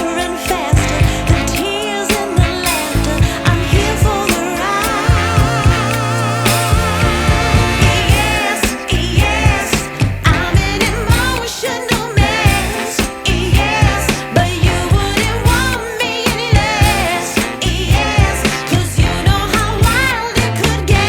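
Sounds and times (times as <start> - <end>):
song with sung melody: 0.0 - 21.0
steady drum beat: 0.0 - 21.0.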